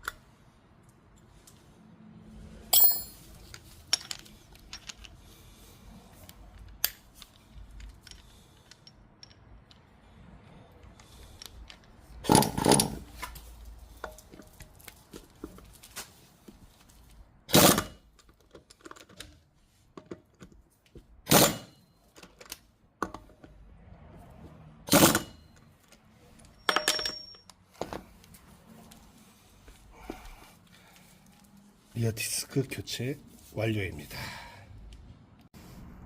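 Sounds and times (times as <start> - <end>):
metal clicks and clinks: 2.7 - 5.2, 6.2 - 9.9, 25.1 - 27.6
loud tool bursts: 17.5 - 18.0, 21.3 - 21.8, 24.9 - 25.4.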